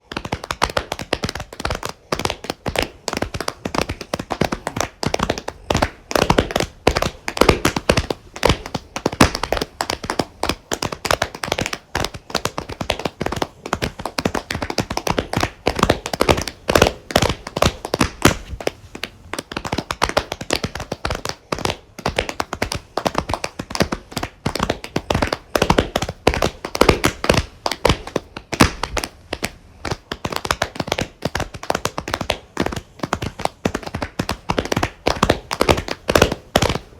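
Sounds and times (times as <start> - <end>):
small group applauding: 0.0 - 18.5.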